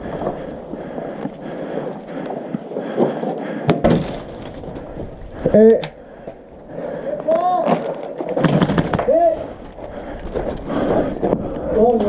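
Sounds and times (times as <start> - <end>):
rustling and shuffling of movement: 0.0 - 12.0
sharp crack: 7.4 - 9.4.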